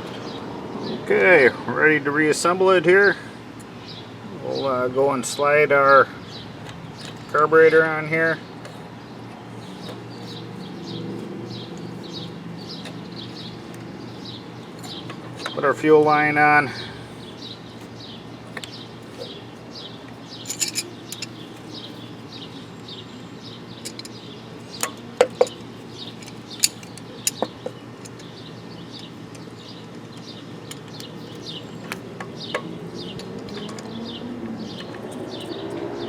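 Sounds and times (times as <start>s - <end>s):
bird chirping: 5.9s - 36.0s
small metal parts clinking: 20.2s - 22.2s, 23.8s - 31.6s.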